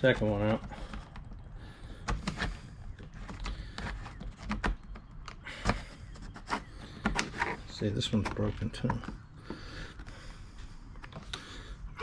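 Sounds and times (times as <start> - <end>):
plastic clicks and creaks: 0.0 - 9.3.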